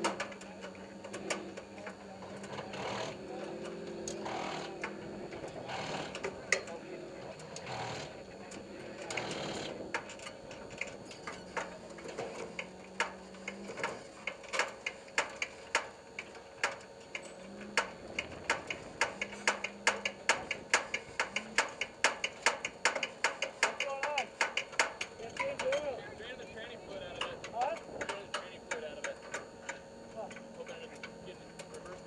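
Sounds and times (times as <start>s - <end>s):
sharp irregular clicks: 7.4s - 25.9s, 27.1s - 32.0s.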